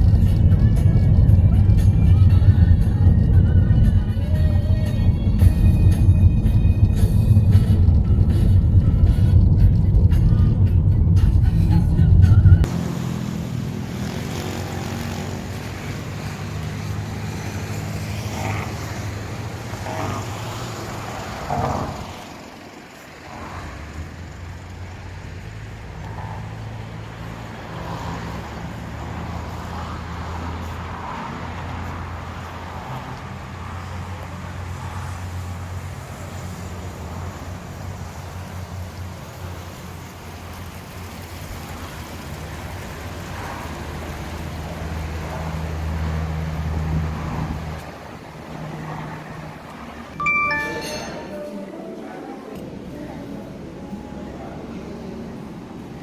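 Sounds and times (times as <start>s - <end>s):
car engine and road hum: 0.0s - 50.2s.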